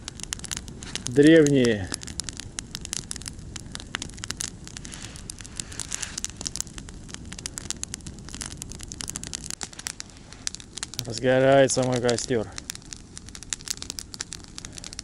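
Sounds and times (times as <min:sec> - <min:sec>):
campfire crackling and popping: 0:00.0 - 0:15.0
fire hissing: 0:00.0 - 0:15.0.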